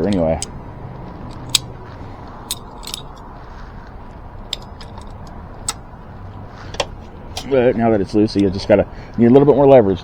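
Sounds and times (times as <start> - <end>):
metallic clicks of hand tools: 0.0 - 0.6, 1.2 - 1.7, 2.5 - 3.3, 4.5 - 5.9.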